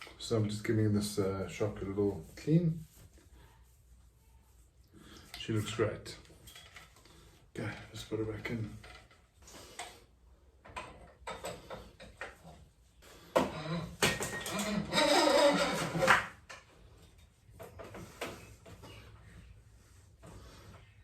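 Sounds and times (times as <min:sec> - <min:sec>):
scraping and knocking on metal: 0:10.7 - 0:19.1.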